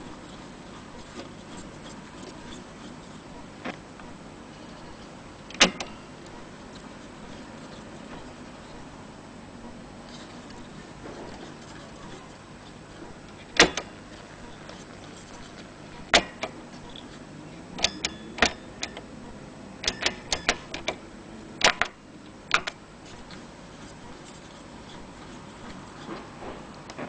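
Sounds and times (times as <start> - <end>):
sharp clicks and knocks: 5.5 - 7.4, 13.6 - 13.9, 14.7 - 17.0, 19.8 - 21.0, 21.6 - 23.4.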